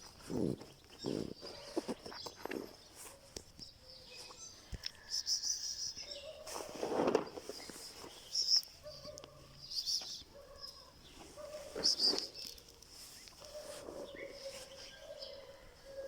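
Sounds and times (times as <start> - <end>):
high bird chirps: 7.6 - 15.5.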